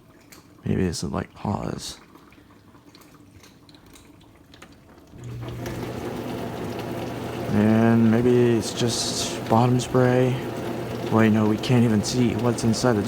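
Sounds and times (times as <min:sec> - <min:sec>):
faint water trickling: 0:00.0 - 0:13.0
dishwasher pump motor humming: 0:05.1 - 0:13.0
water spraying: 0:05.2 - 0:13.0.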